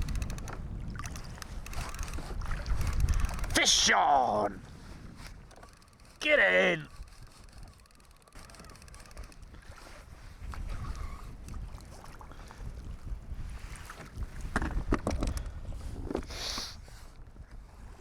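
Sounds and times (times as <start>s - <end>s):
wind rumbling on microphone: 0.0s - 5.9s, 6.9s - 18.0s.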